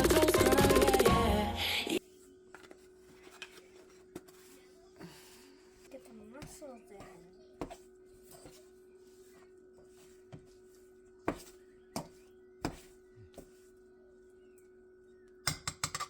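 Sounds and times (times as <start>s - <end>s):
utensils knocking on dishes: 15.5s - 16.0s.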